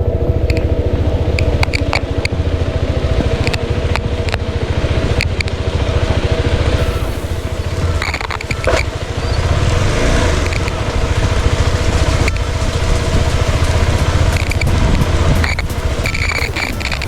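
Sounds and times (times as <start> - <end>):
motorcycle engine running: 0.0 - 17.0
clicks and knocks from rough road: 6.8 - 17.0.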